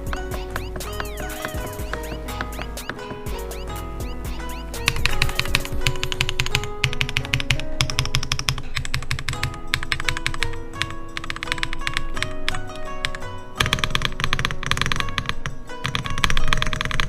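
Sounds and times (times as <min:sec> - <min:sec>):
background music: 0:00.0 - 0:17.0
mechanical keyboard typing: 0:00.0 - 0:17.0.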